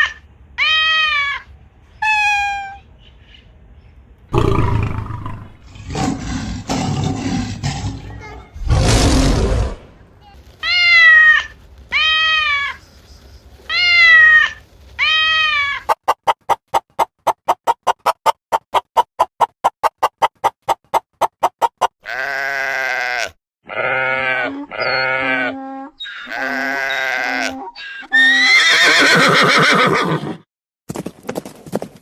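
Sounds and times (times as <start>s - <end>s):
rising and falling animal calls: 10.6s - 15.9s
loud wavering bleats: 22.0s - 29.0s.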